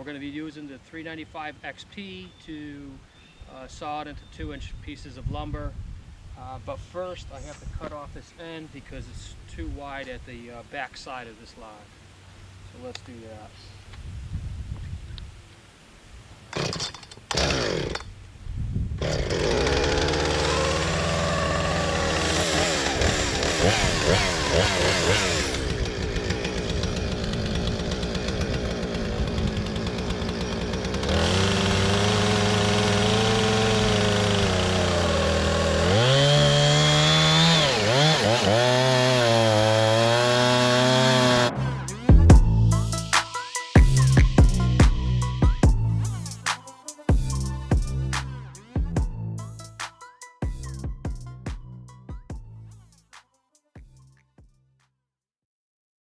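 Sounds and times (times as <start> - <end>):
chainsaw cutting through log: 16.5 - 18.1, 19.0 - 46.6
chainsaw revving: 16.5 - 18.1, 19.0 - 46.6
chainsaw starter pulls: 16.5 - 18.2, 19.0 - 41.5.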